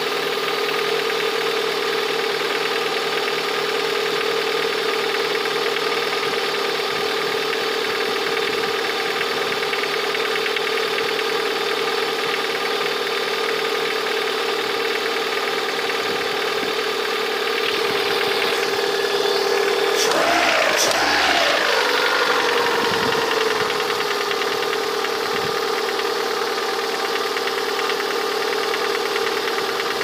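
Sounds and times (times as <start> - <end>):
car engine idling: 0.0 - 30.0
rhythmic engine knock: 0.0 - 30.0
steady whine: 17.5 - 27.2.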